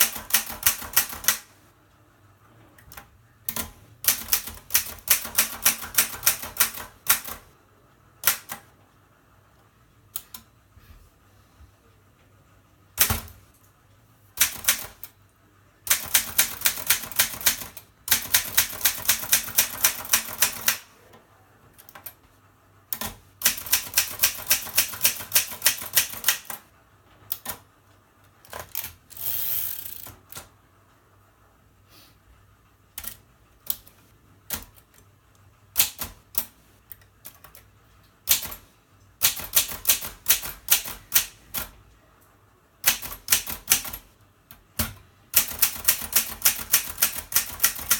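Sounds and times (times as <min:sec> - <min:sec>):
typewriter key strikes: 0:44.8 - 0:47.9.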